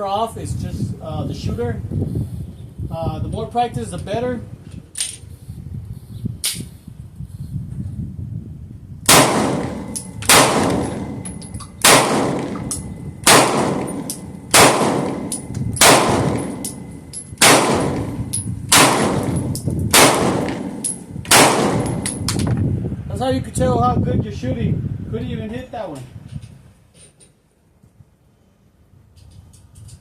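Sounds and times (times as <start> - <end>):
rifle shots echoing: 9.1 - 22.3.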